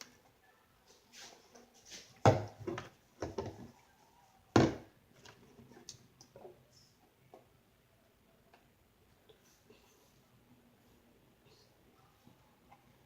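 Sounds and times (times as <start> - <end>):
objects knocking and thumping: 2.2 - 3.7, 4.6 - 5.4.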